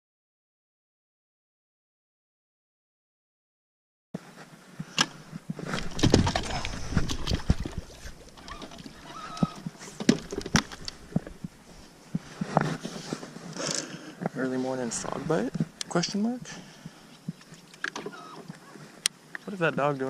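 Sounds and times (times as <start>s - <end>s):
water: 5.8s - 11.9s.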